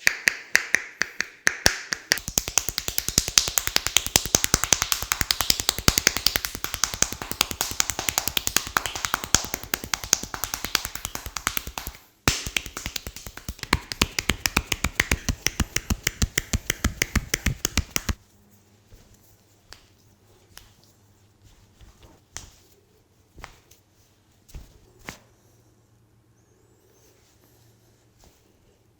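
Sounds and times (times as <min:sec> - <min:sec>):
rapid hand tapping: 0:00.0 - 0:18.2.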